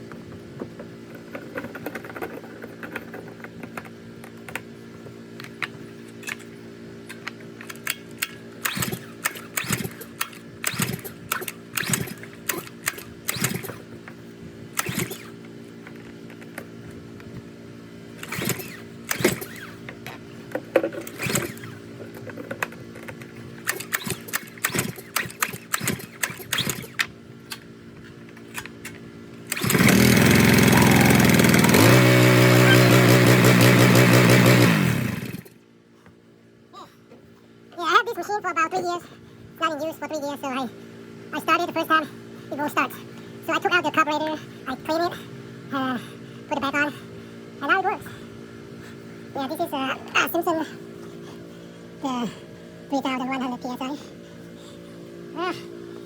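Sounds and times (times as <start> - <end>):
gasoline engine running loudly: 29.4 - 35.6.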